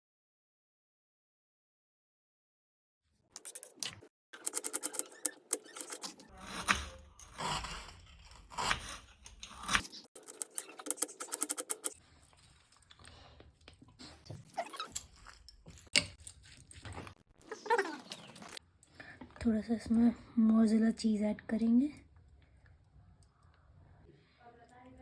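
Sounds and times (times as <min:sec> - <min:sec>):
sharp taps and clicks: 0:10.2 - 0:12.0.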